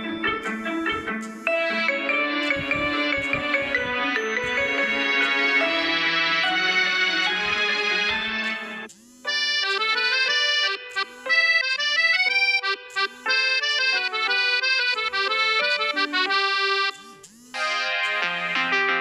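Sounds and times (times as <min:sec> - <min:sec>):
fuller phone ringtone: 0:00.0 - 0:07.7, 0:08.4 - 0:19.0
phone ringtone melody: 0:00.0 - 0:07.7, 0:08.6 - 0:19.0.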